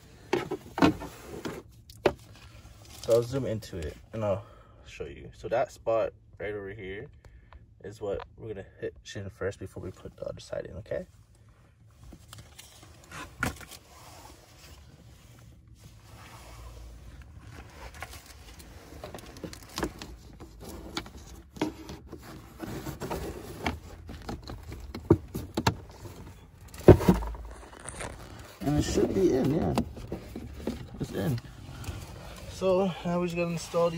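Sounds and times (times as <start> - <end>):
filter scraping and rustling: 12.0 - 33.9.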